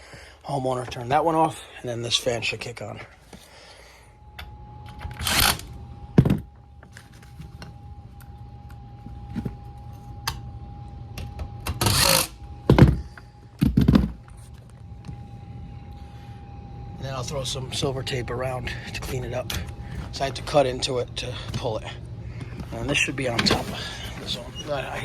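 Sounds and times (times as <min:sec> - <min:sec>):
blower fan hum: 0:00.0 - 0:25.0
thin even whine: 0:04.0 - 0:25.0.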